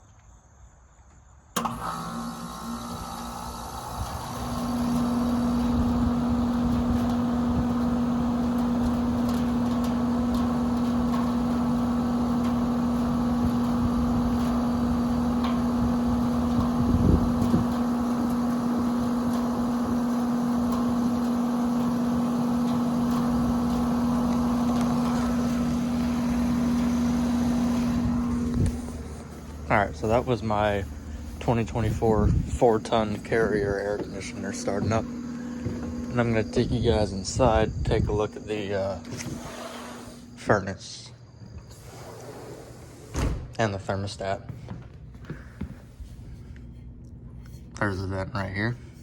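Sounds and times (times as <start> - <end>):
air conditioner unit humming: 2.1 - 49.0
low bumps: 20.8 - 40.3.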